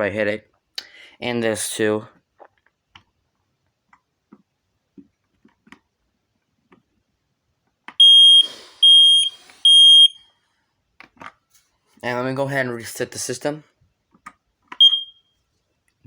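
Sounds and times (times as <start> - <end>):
smoke alarm beeps: 8.0 - 10.3, 14.8 - 15.4.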